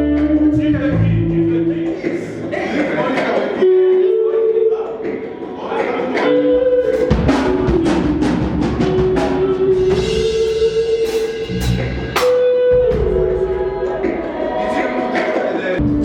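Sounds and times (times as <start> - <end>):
guitar: 0.0 - 16.0
drum kit beat: 4.9 - 16.0.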